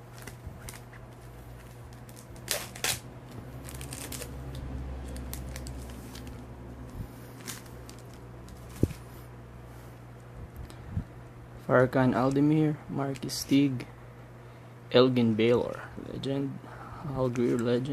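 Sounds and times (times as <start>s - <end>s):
wrapper crinkling: 0.0s - 6.5s, 7.3s - 9.1s
cards being handled: 0.0s - 9.3s
steady low hum: 0.0s - 17.9s.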